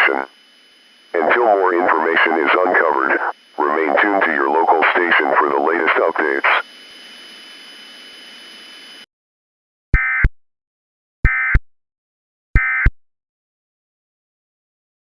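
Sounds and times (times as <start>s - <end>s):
warbling data bursts: 1.1s - 8.6s.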